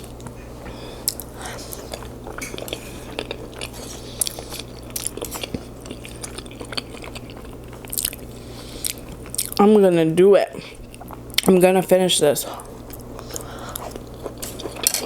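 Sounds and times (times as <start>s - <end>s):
chewing with wet smacks: 1.0s - 9.7s, 10.8s - 11.5s, 12.6s - 15.0s.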